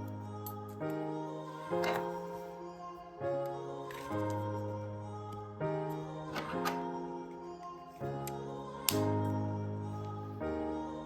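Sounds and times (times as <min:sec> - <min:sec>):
soft instrumental music: 0:00.0 - 0:11.0.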